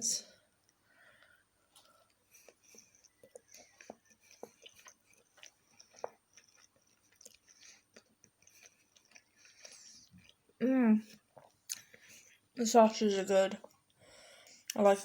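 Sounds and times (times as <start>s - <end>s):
person chewing: 1.2s - 12.5s.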